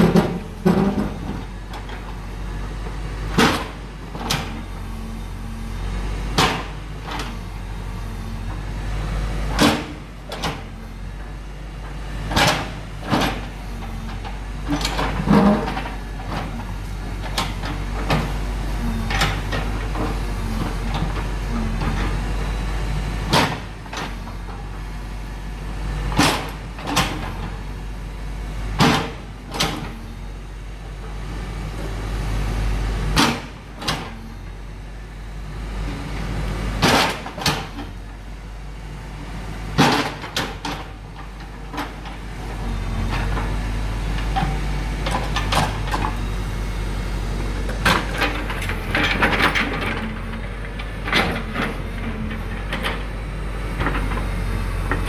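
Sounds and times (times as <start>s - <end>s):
excavator bucket clanking on concrete: 0.0s - 2.0s, 14.7s - 16.6s, 47.7s - 53.2s
diesel engine running: 0.0s - 55.0s.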